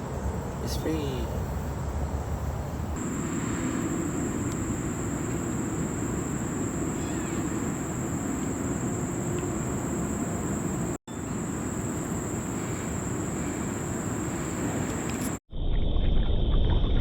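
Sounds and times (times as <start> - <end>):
high-pitched insect drone: 3.0 - 15.4.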